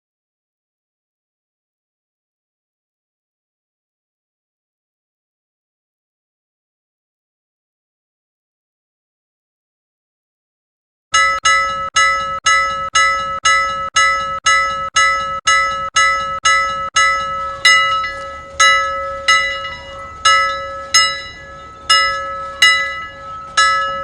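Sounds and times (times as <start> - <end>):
timer alarm bell ringing: 11.2 - 24.0.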